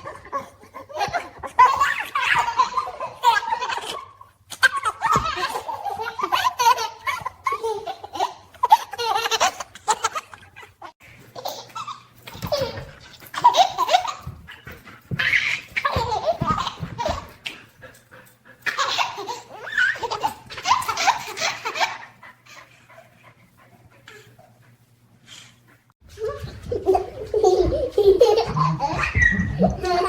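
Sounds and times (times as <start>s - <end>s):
baby giggling: 26.2s - 30.0s.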